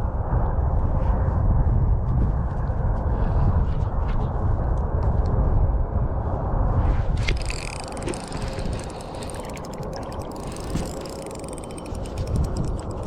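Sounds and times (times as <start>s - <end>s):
wind rumble on microphone: 0.0s - 13.0s
fishing reel clicking: 7.2s - 13.0s.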